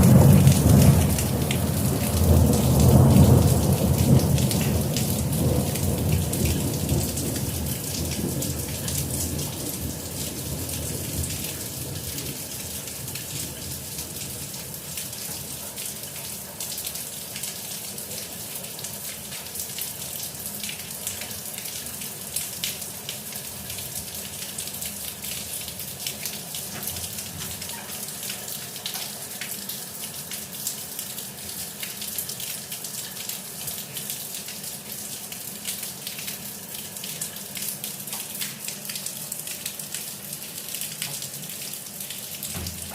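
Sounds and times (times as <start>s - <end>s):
low thunder rumble: 0.0s - 11.5s
raindrops striking close by: 0.0s - 42.9s
steady rain falling: 0.0s - 42.9s.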